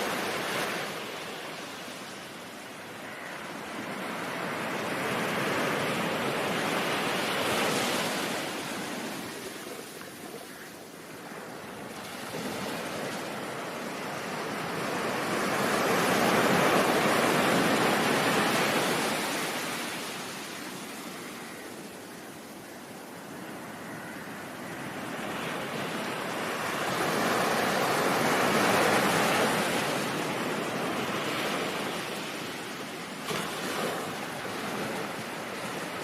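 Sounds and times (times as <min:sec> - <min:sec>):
ocean waves washing in: 0:00.0 - 0:21.6.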